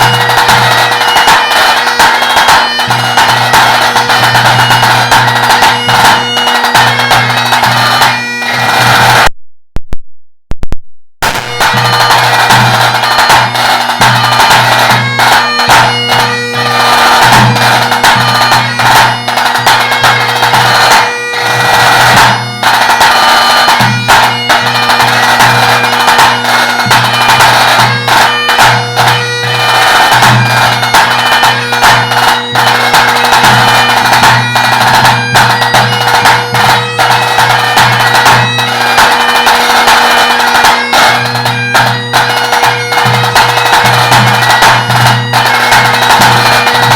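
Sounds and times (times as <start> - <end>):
bagpipe playing a tune: 0.0 - 9.3, 11.3 - 46.9
tenor drum strokes: 11.2 - 16.3.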